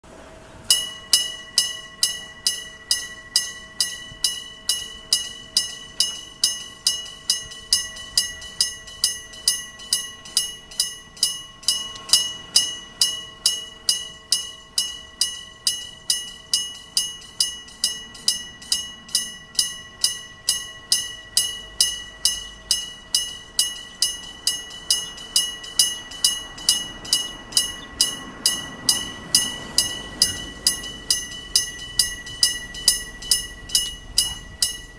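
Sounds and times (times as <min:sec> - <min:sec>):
level crossing bell: 0:00.7 - 0:34.9.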